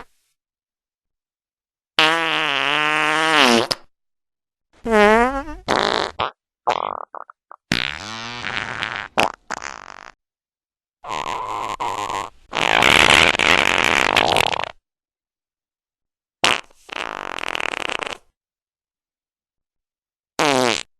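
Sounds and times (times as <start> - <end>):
fart sound effects: 2.0 - 3.9, 4.8 - 10.2, 11.0 - 14.8, 16.4 - 18.3, 20.4 - 20.9.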